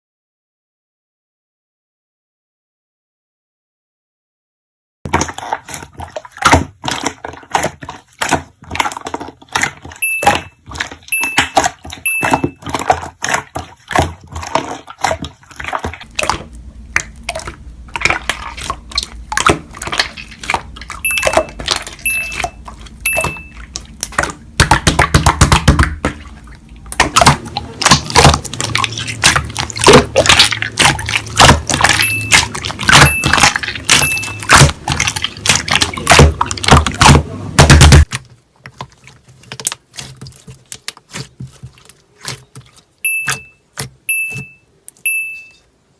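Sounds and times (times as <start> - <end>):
slime squished by hand: 5.1 - 44.0
short faint beeps: 10.0 - 10.5, 11.1 - 12.5, 43.1 - 45.7.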